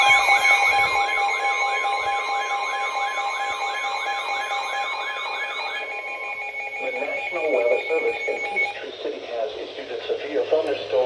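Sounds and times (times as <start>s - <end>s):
electronic alert tones: 0.0s - 8.8s
warbling siren: 0.0s - 8.8s.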